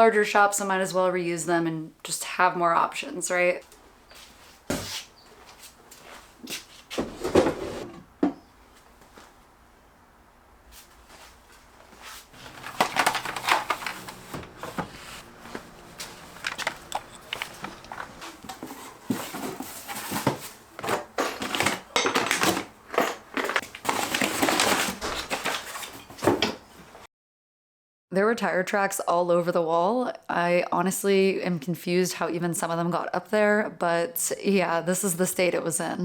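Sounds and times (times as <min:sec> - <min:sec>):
objects rustling and knocking: 0:03.7 - 0:09.4, 0:10.8 - 0:27.0.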